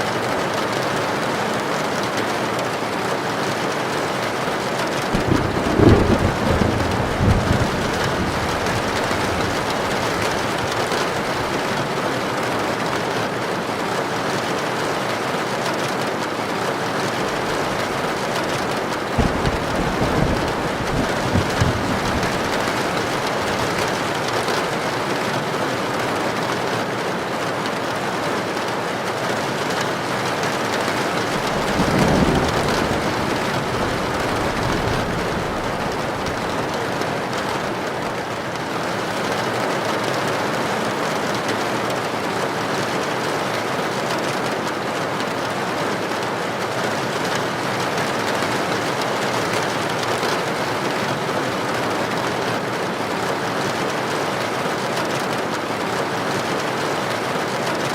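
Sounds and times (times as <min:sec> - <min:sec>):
heavy rain on a tin roof: 0:00.0 - 0:57.9
low rumble of thunder: 0:05.1 - 0:12.1, 0:17.1 - 0:24.8, 0:30.7 - 0:38.3.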